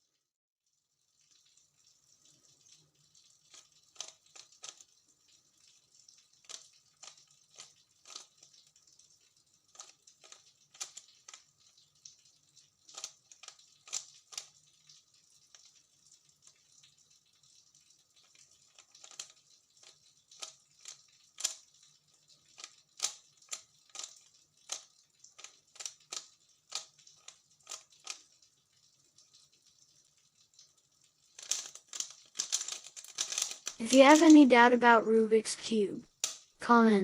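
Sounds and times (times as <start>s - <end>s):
plastic puzzle cube clicks: 3.5s - 4.8s, 6.4s - 8.3s, 9.7s - 11.4s, 12.9s - 14.5s, 18.7s - 21.6s, 22.6s - 28.2s, 31.4s - 34.3s.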